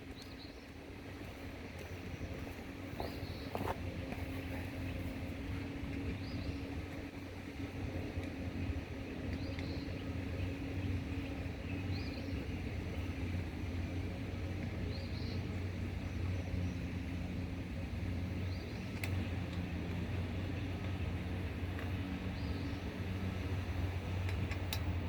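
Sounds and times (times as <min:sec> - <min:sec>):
low mechanical hum: 0:00.0 - 0:25.0
bird chirping: 0:22.3 - 0:23.0.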